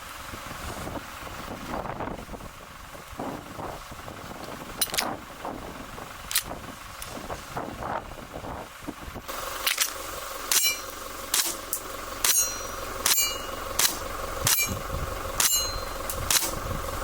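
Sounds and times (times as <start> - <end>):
air pistol shots: 9.6 - 14.7, 15.4 - 16.6
short metallic ring: 10.5 - 14.8, 15.4 - 16.5.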